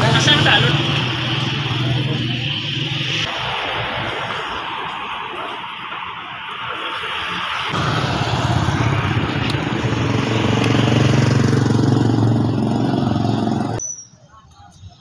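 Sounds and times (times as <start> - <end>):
engine running: 6.5 - 13.8.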